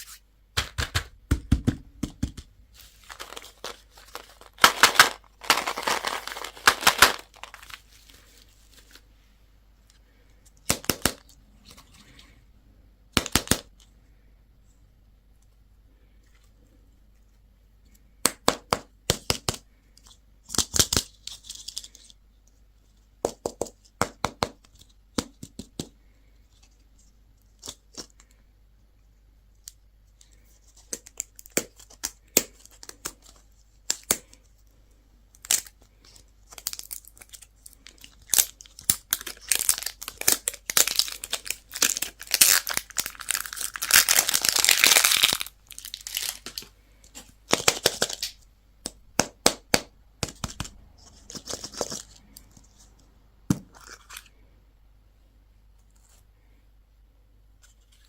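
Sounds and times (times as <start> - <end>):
wrappers tearing and crinkling: 2.8 - 9.0, 36.5 - 46.6.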